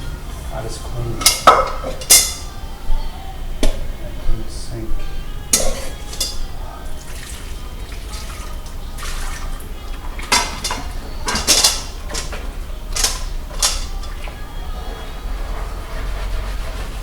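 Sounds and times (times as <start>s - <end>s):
dishes and pots clattering: 1.1s - 2.6s, 5.5s - 15.2s.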